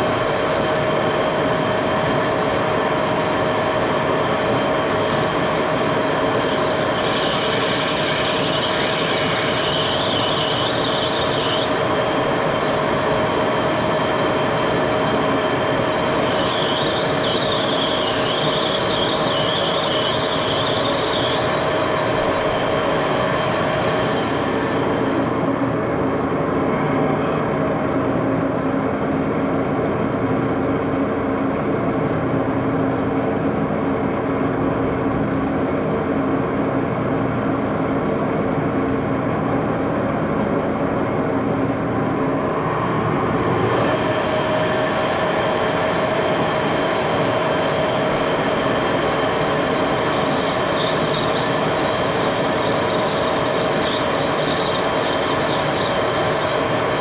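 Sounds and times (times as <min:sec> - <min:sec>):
machine humming: 0:00.0 - 0:28.2, 0:41.0 - 0:57.0.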